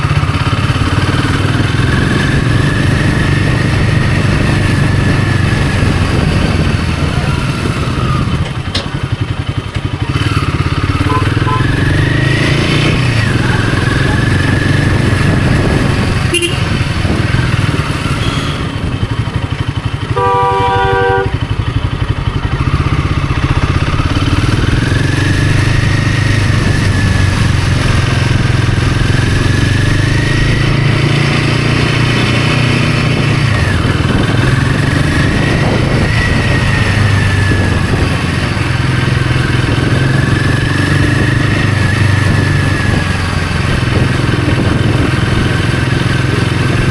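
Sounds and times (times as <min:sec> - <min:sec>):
motorcycle engine running: 0:00.0 - 0:46.9
vehicle horn: 0:10.8 - 0:12.1, 0:16.2 - 0:17.2, 0:18.0 - 0:19.0, 0:20.0 - 0:21.6.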